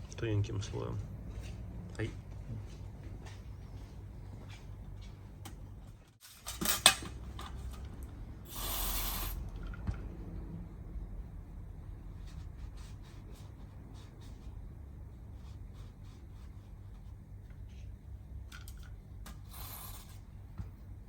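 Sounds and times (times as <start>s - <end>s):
tools and parts clicking: 6.2s - 7.9s.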